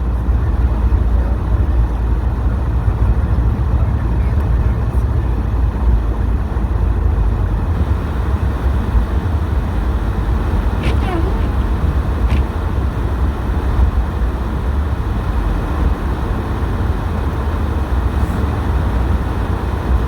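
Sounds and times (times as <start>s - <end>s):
car engine and tyre rumble: 0.0s - 20.0s.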